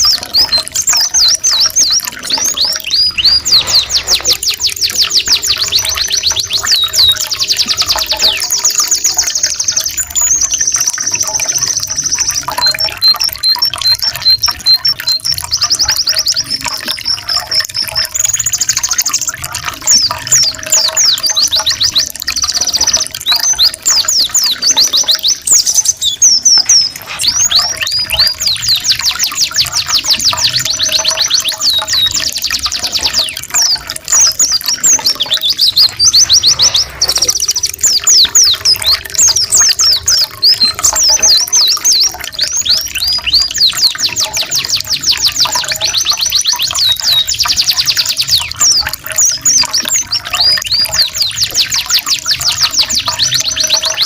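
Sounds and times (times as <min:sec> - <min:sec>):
songbirds chirping and trilling: 0:00.0 - 0:54.0
trickling water: 0:00.0 - 0:54.0.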